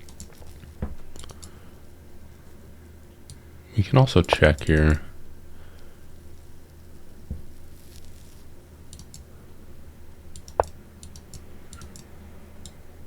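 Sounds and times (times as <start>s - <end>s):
computer mouse clicking: 8.9s - 9.2s, 10.3s - 12.8s.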